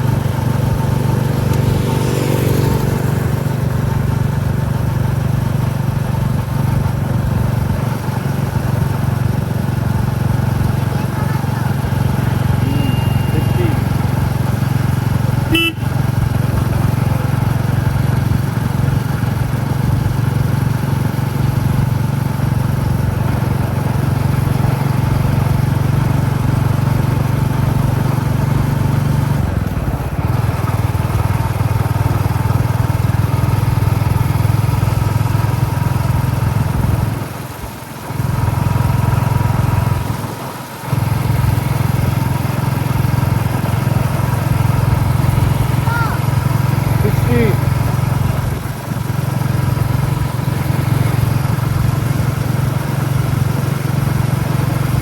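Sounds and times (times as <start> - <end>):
motorcycle engine running: 0.0 - 55.0
short beep: 12.5 - 13.9.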